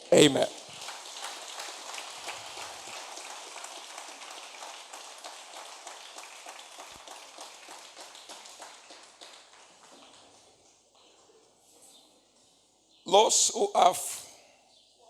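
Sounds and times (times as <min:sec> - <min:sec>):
crowd applauding: 0:00.0 - 0:10.6.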